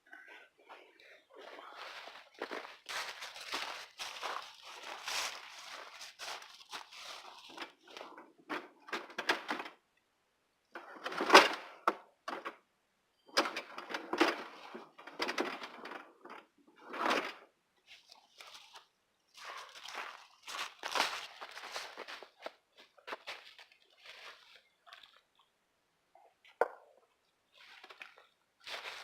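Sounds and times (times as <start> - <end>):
crunching on dry leaves and twigs: 1.4 - 8.2, 17.8 - 25.4, 27.5 - 29.0.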